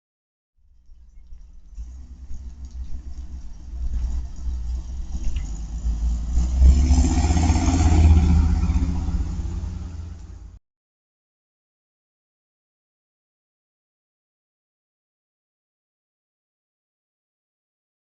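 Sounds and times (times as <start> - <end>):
vehicle engine rumble: 0.6 - 10.6.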